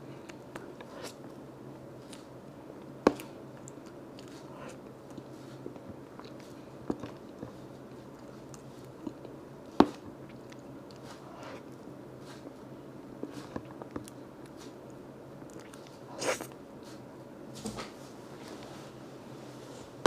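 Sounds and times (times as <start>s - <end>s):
chewing and wet mouth sounds: 3.1s - 11.8s, 13.3s - 16.6s.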